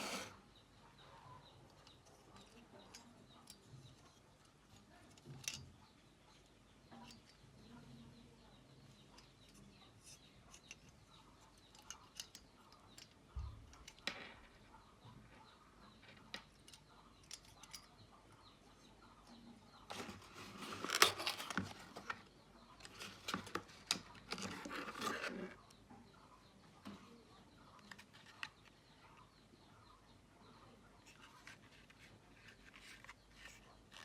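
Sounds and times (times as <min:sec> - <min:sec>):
packaging rustling and clattering: 0:19.9 - 0:22.1.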